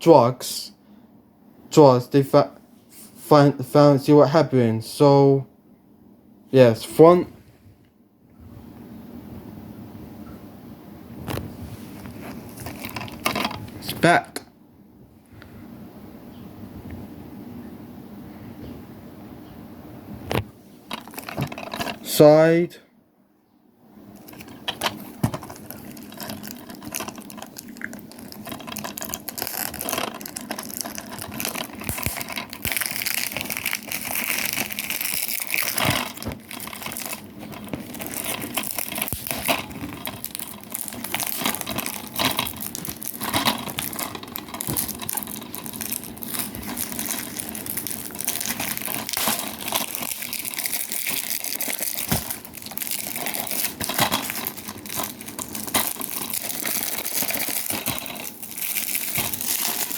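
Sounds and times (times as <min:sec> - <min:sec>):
plastic wrap crinkling: 0:11.3 - 0:14.0, 0:20.8 - 0:22.2, 0:24.1 - 0:59.9.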